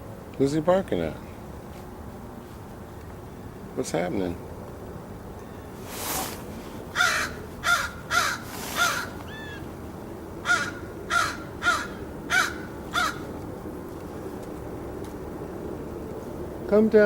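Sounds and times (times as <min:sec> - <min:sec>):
crow cawing loudly: 0:06.9 - 0:09.6, 0:10.4 - 0:13.3.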